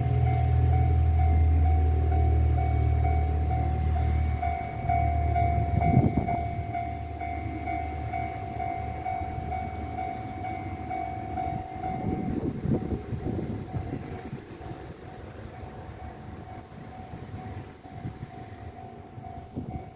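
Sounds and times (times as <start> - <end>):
level crossing alarm ringing: 0.0 - 12.4
tram low rumble: 0.0 - 19.9
tram wheels clattering: 0.0 - 19.9.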